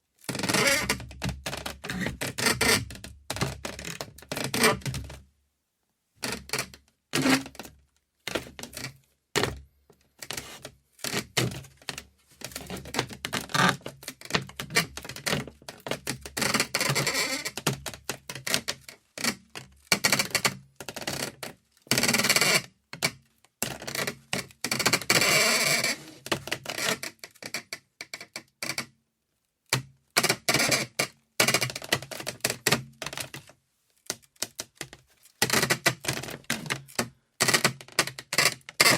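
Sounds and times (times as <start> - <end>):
wood creaking: 12.5 - 15.2.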